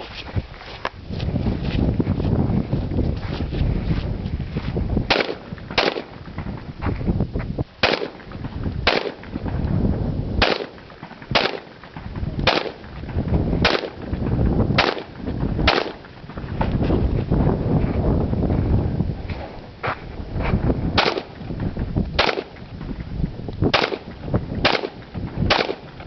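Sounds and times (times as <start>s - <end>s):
wind rumble on microphone: 0.0s - 26.0s
gunshots: 5.1s - 6.5s, 7.8s - 9.6s, 10.4s - 16.7s, 21.0s - 21.4s, 22.2s - 22.7s, 23.7s - 26.0s.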